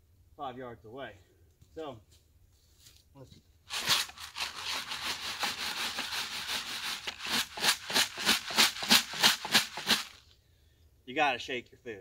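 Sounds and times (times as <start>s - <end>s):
corn kernels rattling in a container: 3.7s - 10.2s.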